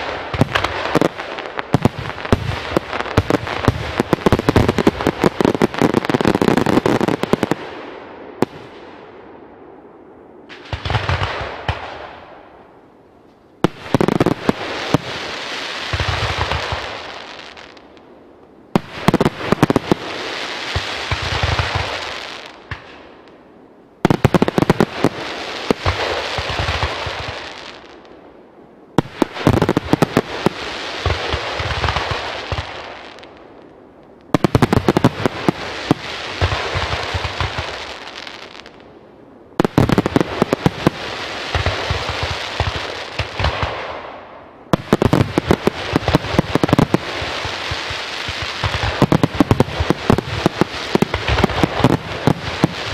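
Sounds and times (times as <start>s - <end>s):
firework crackling hiss: 44.8s - 52.9s.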